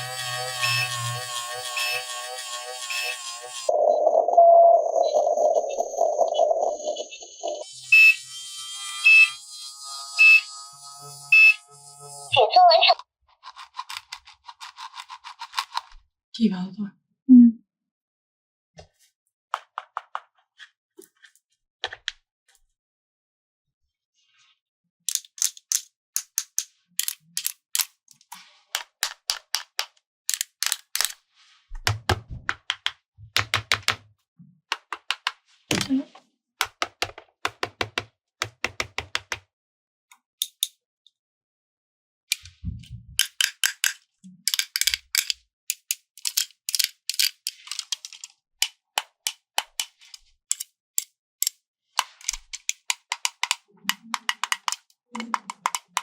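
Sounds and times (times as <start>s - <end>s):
plastic toy pieces clicking: 13.4s - 16.0s, 25.1s - 31.2s, 40.4s - 40.8s, 43.2s - 56.0s.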